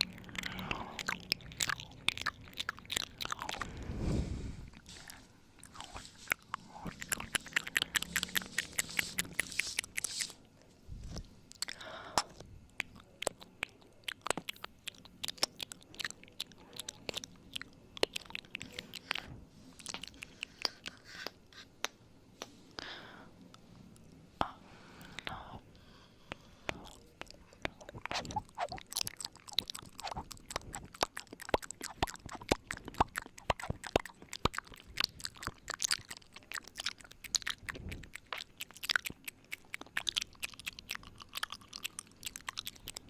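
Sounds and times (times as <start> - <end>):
wet mouth clicks and smacks: 0.0 - 3.7, 4.9 - 10.4, 11.1 - 22.6, 26.3 - 43.0.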